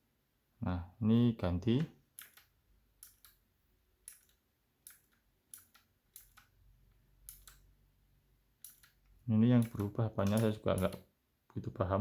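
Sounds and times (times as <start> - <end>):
mechanical keyboard clicking: 2.2 - 3.4, 4.0 - 6.5, 7.3 - 7.7, 8.6 - 11.0.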